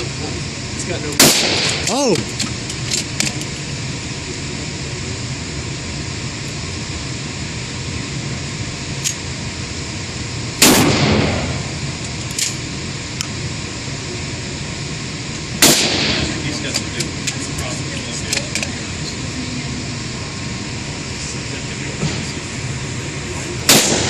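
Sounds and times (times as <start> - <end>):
steady background noise: 0.0 - 24.0
loud gunshot echoing: 1.2 - 1.8, 10.6 - 11.6, 15.6 - 16.3, 23.7 - 24.0.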